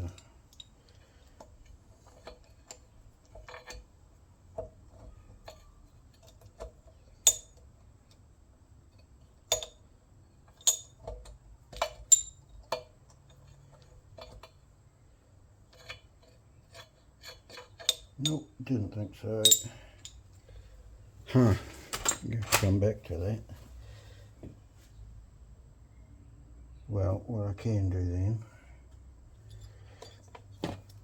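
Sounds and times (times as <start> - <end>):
metal tools clicking: 5.0 - 7.6, 10.5 - 14.6, 16.7 - 18.4, 19.4 - 20.2, 21.7 - 22.8
ringing metal clinks: 19.4 - 20.2.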